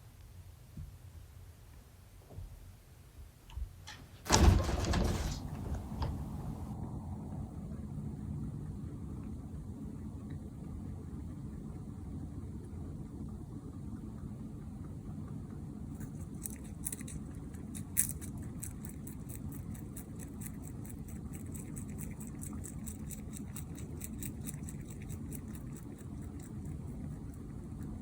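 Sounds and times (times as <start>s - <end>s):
low room hum: 0.0s - 28.0s
rabbit teeth clicking: 16.0s - 28.0s.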